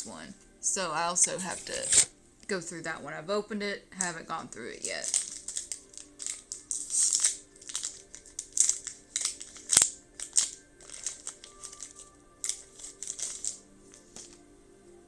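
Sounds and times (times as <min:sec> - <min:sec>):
foil wrapper crinkling: 0:04.8 - 0:14.4.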